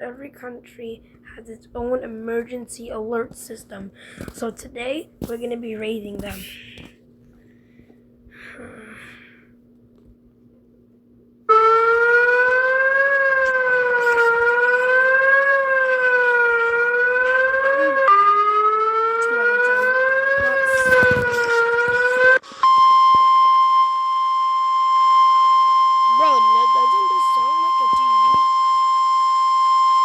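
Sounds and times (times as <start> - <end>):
wailing alert siren: 11.5 - 30.0
steady high beep tone: 22.1 - 30.0.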